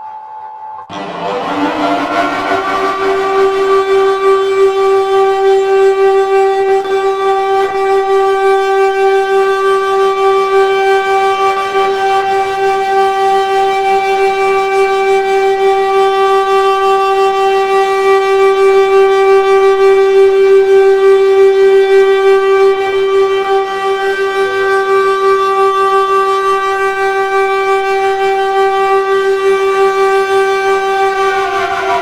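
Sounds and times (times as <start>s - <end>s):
emergency alert alarm tone: 0.9s - 4.9s.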